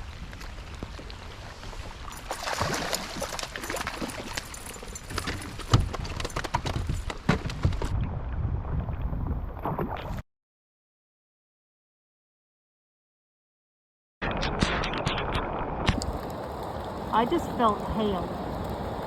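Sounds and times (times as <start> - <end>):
wind buffeting microphone: 4.8 - 9.9, 15.9 - 19.0
storm rain: 14.3 - 19.0
raindrops tapping: 15.9 - 19.0.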